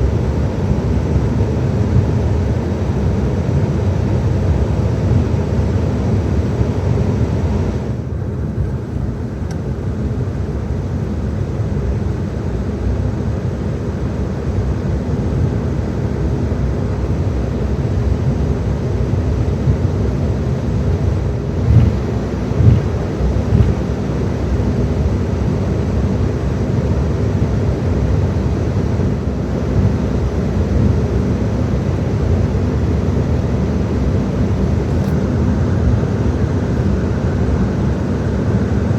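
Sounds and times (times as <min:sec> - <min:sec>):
jet engine rumble: 0:00.0 - 0:38.9
wheels rolling on taxiway: 0:21.6 - 0:23.9.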